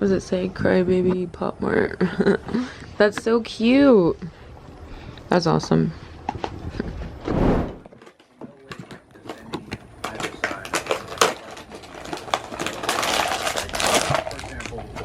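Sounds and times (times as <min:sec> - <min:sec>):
wrapper crinkling: 0:10.0 - 0:15.0.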